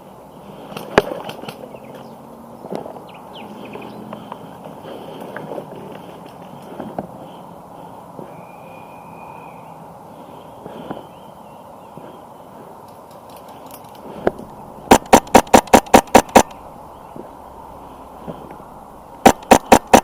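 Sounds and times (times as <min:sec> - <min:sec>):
quiet outdoor ambience: 0:00.0 - 0:20.0
airsoft rifle shots: 0:14.9 - 0:16.6, 0:19.2 - 0:20.0.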